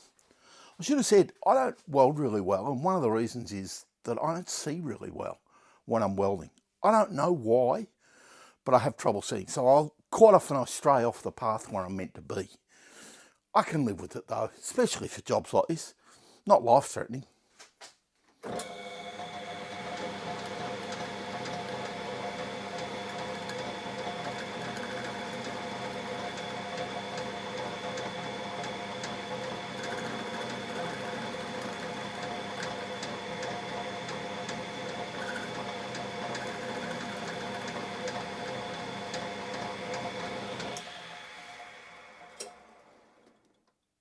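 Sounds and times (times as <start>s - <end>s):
metal lathe running: 18.5s - 43.0s.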